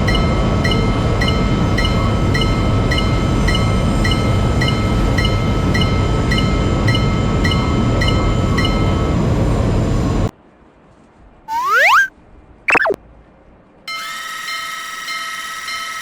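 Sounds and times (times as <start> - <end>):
passing train rumble: 0.0 - 10.3
railroad crossing bell ringing: 0.0 - 10.3, 13.9 - 16.0.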